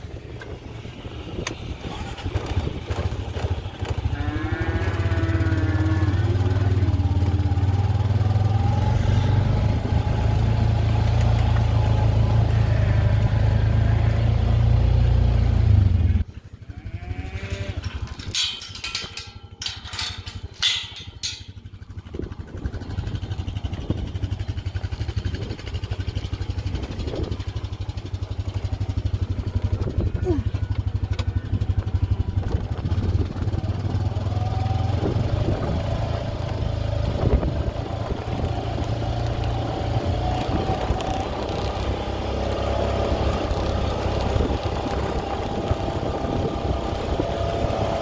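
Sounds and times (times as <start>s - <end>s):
farm vehicle engine running: 0.0s - 48.0s
sharp clattering: 17.6s - 22.1s.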